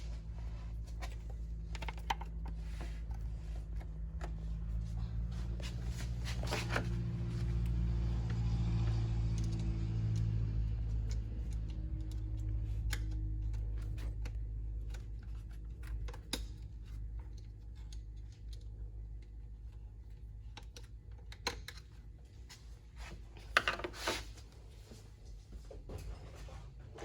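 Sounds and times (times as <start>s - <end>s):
low hum: 0.0s - 20.2s.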